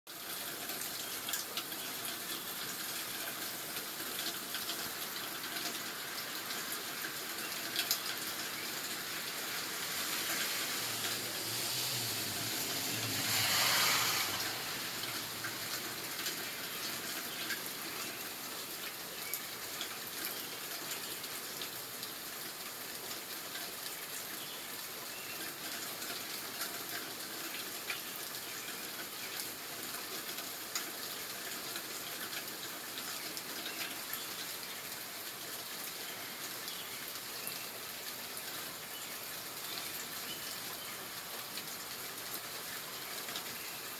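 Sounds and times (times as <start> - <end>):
water rushing: 0.5 - 17.4.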